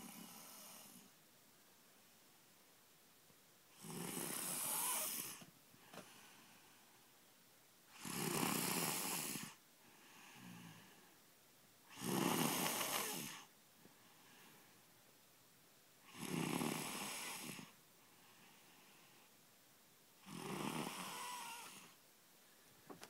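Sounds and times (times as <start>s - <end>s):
quiet breaths: 0.0s - 23.0s
loud snoring: 3.7s - 5.4s, 7.9s - 9.6s, 11.9s - 13.5s, 16.0s - 17.8s, 20.2s - 22.0s.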